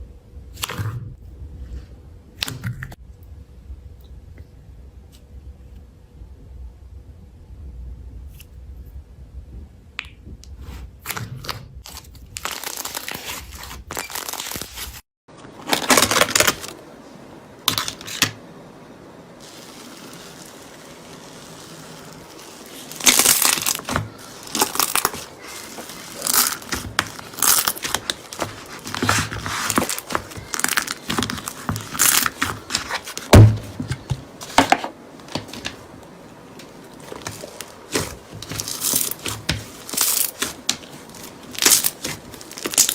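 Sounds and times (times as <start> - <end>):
slime squishing: 19.4 - 34.7, 36.6 - 42.9.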